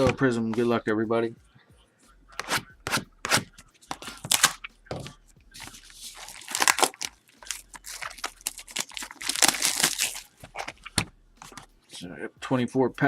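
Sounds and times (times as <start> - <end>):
packaging tearing and crinkling: 3.3 - 4.6, 5.6 - 11.6.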